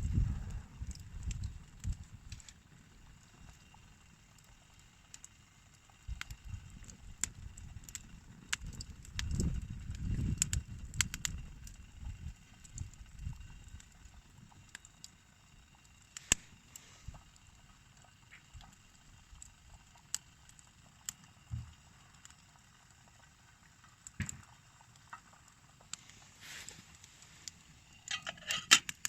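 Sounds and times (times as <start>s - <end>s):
sharp clicks and small knocks: 23.8s - 26.0s, 27.4s - 29.0s.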